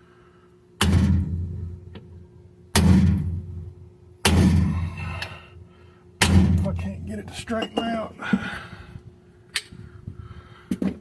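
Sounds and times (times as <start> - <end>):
hammer striking steel punch: 0.8 - 1.6, 2.7 - 3.4, 4.2 - 4.7, 6.2 - 6.8.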